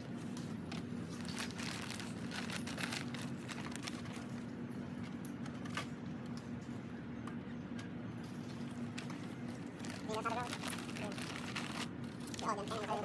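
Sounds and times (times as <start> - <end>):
steady low hum: 0.0 - 13.0
packaging crinkling and rustling: 0.2 - 5.9, 8.6 - 13.0.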